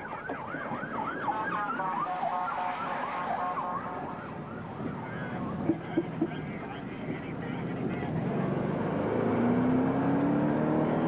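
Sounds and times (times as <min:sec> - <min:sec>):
emergency siren: 0:00.0 - 0:04.9.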